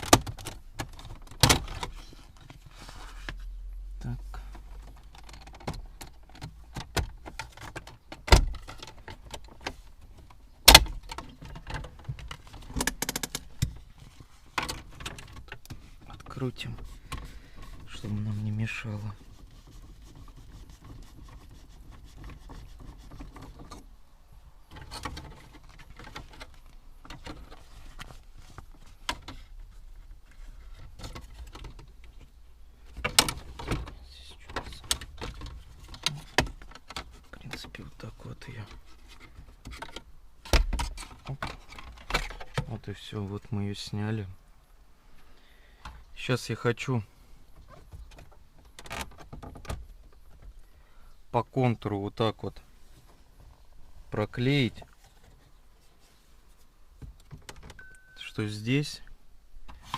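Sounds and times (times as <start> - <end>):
plastic trim panel clicks and knocks: 10.6 - 13.8.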